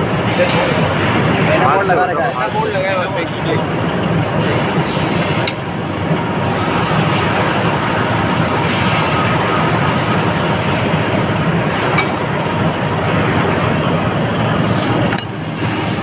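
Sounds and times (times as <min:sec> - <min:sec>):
loud machine noise: 0:00.0 - 0:16.0.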